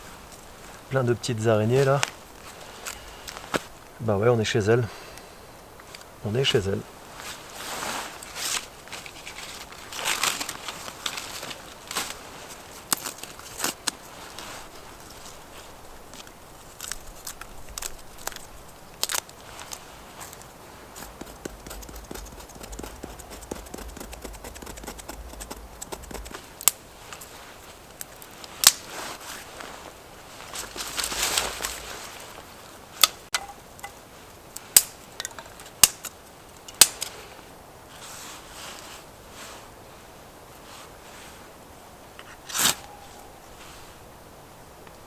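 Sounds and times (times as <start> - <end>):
rustling: 5.8 - 41.5
dry wood snapping: 9.0 - 12.2, 12.9 - 14.0, 16.2 - 27.2, 27.9 - 28.9, 33.0 - 34.0, 34.6 - 37.2.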